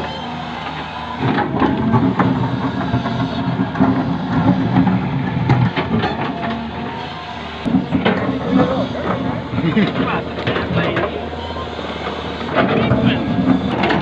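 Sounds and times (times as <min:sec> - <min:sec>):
excavator diesel engine: 0:00.0 - 0:14.0
metal knocks and clanks: 0:01.2 - 0:06.7, 0:07.6 - 0:11.1.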